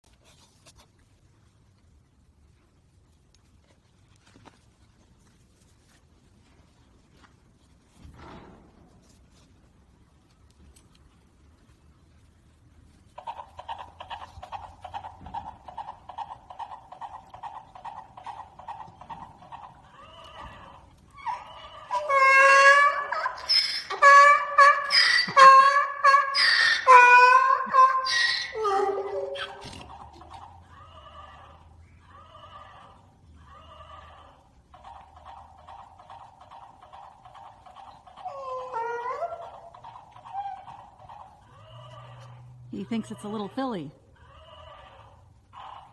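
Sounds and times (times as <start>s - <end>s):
donkey braying: 13.2s - 45.9s
toy horse whinny: 20.0s - 30.0s, 40.2s - 42.4s, 44.2s - 45.9s.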